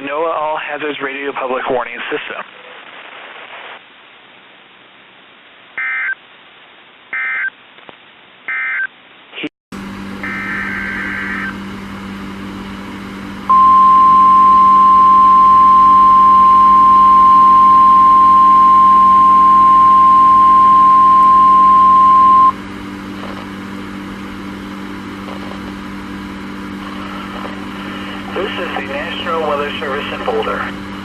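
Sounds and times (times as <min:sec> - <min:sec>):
radio hum and hiss: 0:00.0 - 0:08.2, 0:10.2 - 0:11.6, 0:13.5 - 0:23.7, 0:25.0 - 0:31.0
high warning alarm tone: 0:10.2 - 0:11.5, 0:13.5 - 0:22.6.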